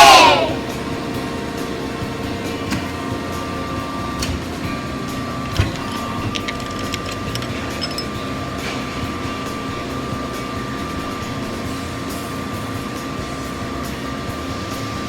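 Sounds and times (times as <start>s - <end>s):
factory machinery whining: 0.0s - 15.0s
clicks: 5.5s - 8.1s.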